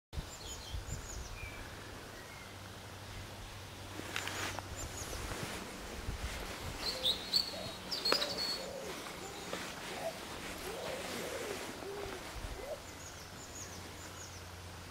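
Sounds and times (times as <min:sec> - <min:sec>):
birds chirping: 0:06.6 - 0:14.9
birds hooting or cooing: 0:06.8 - 0:14.6.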